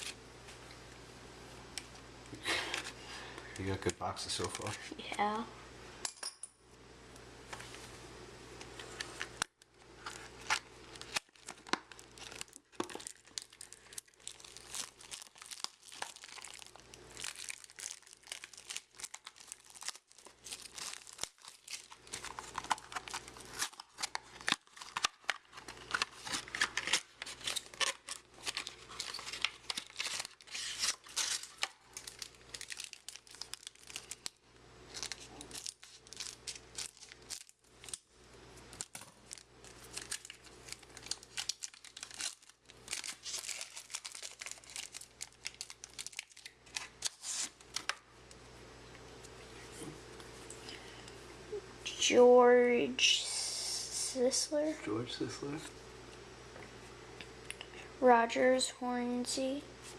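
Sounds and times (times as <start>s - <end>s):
wrapper tearing and crinkling: 9.0s - 38.0s, 38.7s - 48.0s.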